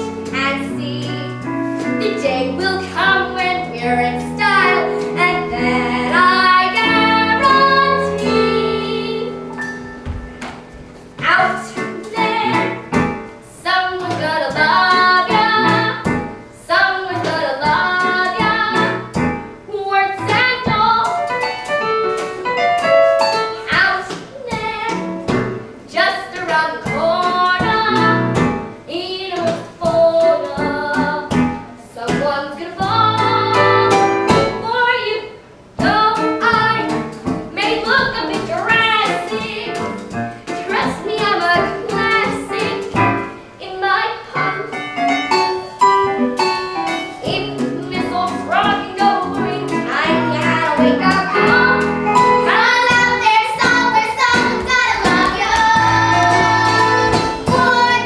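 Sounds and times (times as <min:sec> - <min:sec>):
instrumental backing music: 0:00.0 - 0:58.0
children singing: 0:52.4 - 0:58.0.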